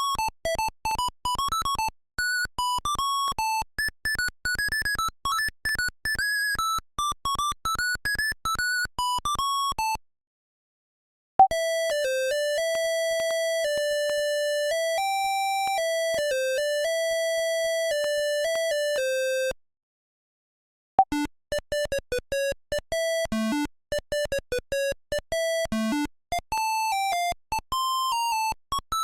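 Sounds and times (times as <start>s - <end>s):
click: 12.7s - 14.3s.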